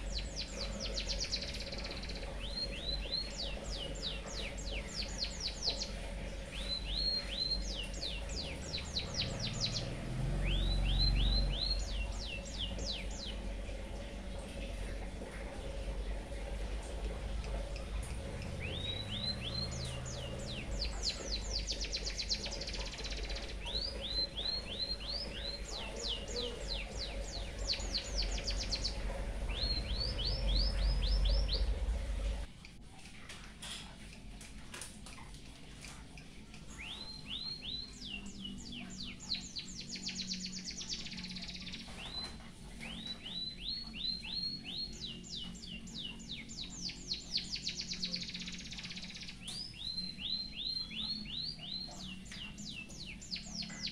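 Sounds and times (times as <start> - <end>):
songbird singing trills: 0.0 - 15.1, 15.8 - 32.5, 36.6 - 53.9
low hum: 0.0 - 53.9.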